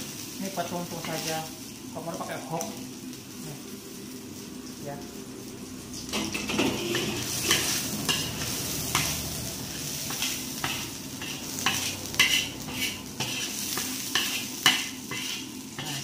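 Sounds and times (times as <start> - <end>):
seafood sizzling in a pan: 0.0 - 16.0
spatula scraping a pan: 6.2 - 16.0.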